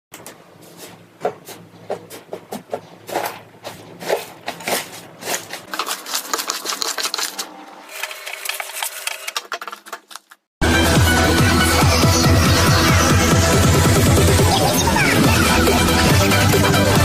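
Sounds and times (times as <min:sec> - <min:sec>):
loud electronic music: 0:10.6 - 0:17.0.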